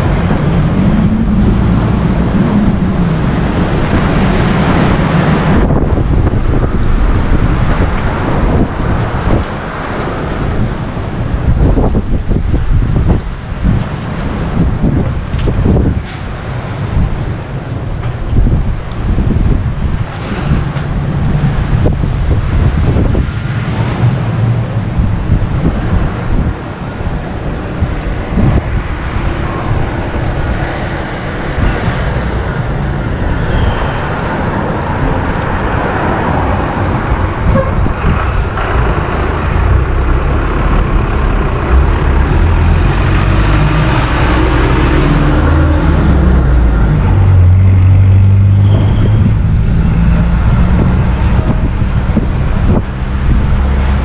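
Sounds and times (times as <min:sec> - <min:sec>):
thin rising whine: 0:00.0 - 0:04.5
road traffic: 0:00.0 - 0:54.0
wind buffeting microphone: 0:00.0 - 0:54.0.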